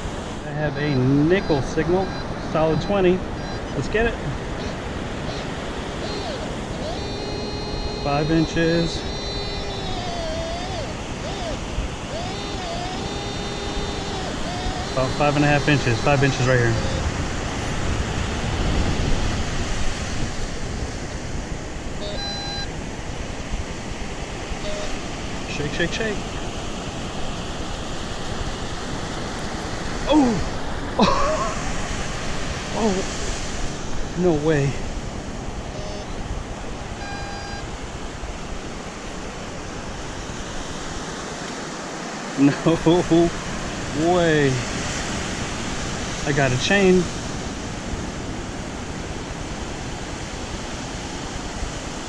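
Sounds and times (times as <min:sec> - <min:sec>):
surf: 0:00.0 - 0:21.4
beach surf: 0:00.0 - 0:52.0
wind: 0:00.0 - 0:52.0
metal detector beep: 0:00.9 - 0:17.2, 0:22.0 - 0:22.8, 0:24.6 - 0:26.2, 0:35.7 - 0:36.2, 0:37.0 - 0:37.7.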